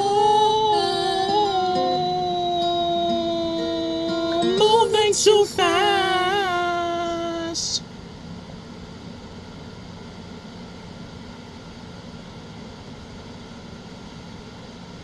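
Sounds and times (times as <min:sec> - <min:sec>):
faint low hum: 0:00.0 - 0:08.1
steady background hiss: 0:00.0 - 0:15.0.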